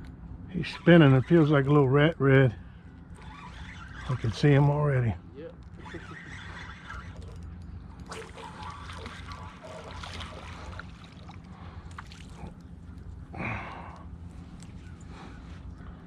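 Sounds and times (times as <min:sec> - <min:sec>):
low hum: 0:00.0 - 0:16.0
water trickling: 0:06.1 - 0:14.0
fish splashing: 0:08.1 - 0:13.0.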